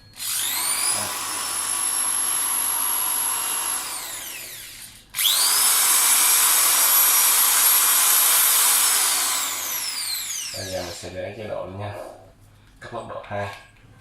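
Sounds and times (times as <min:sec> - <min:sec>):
drill motor whine: 0:00.0 - 0:11.1.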